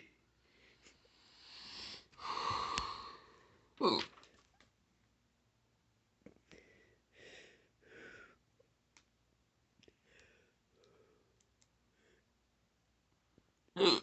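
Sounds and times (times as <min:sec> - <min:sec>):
soft breathy sounds: 0:00.0 - 0:04.5, 0:06.3 - 0:08.8, 0:09.8 - 0:12.5.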